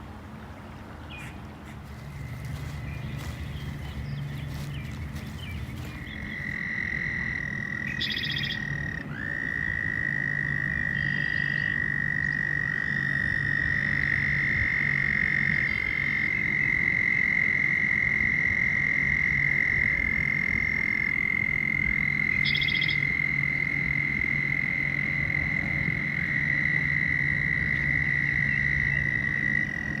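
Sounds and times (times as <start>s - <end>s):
low steady hum: 0.0s - 16.9s
frogs calling in high trills: 1.1s - 30.0s.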